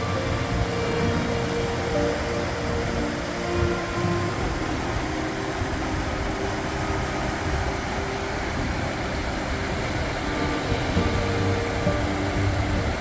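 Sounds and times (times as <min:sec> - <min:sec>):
coach engine and road noise: 0:00.0 - 0:13.0.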